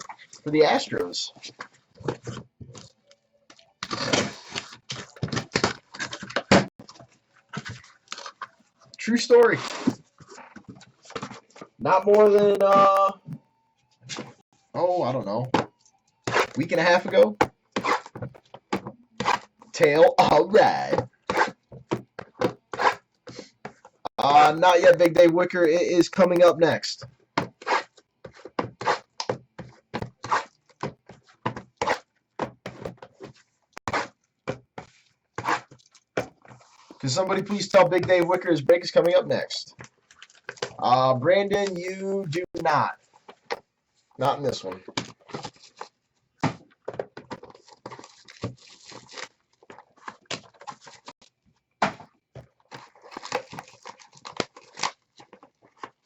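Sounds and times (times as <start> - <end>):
objects clicking and tapping on table: 11.2 - 13.4, 23.7 - 26.8, 36.2 - 39.2
taps and rustles on tabletop: 15.4 - 19.4, 20.2 - 40.8.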